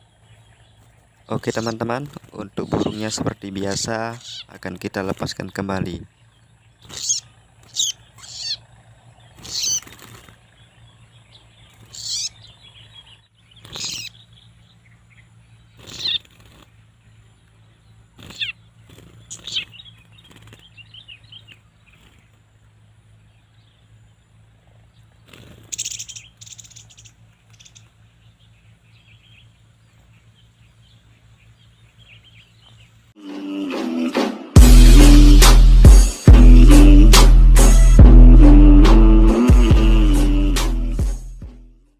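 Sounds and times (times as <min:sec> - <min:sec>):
small bird calling: 0:00.0 - 0:33.2
music: 0:33.2 - 0:41.9.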